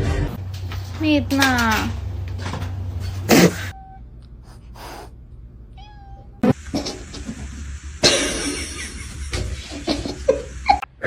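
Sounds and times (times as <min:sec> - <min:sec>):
cat meowing: 0:03.6 - 0:04.1, 0:05.7 - 0:06.5.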